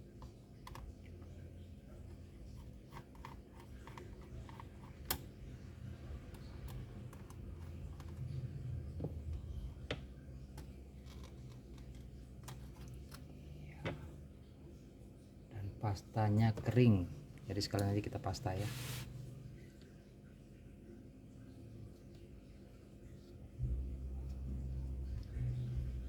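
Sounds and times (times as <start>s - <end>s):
tools clicking and tapping: 6.3s - 8.3s.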